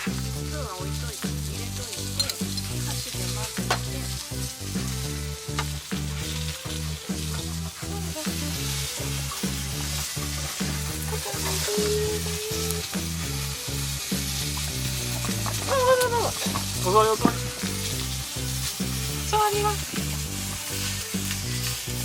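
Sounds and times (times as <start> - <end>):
background music with low notes: 0.0 - 22.0
steady high hiss: 0.0 - 22.0.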